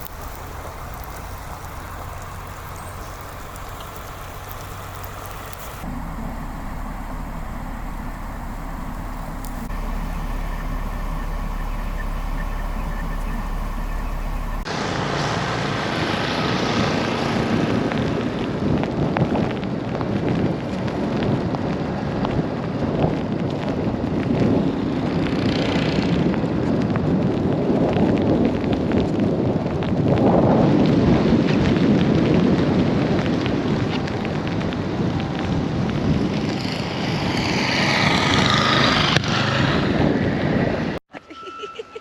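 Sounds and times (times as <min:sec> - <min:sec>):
blizzard wind buffeting microphone: 0:00.0 - 0:14.7
crackles: 0:00.0 - 0:14.7
low steady hum: 0:00.0 - 0:14.7.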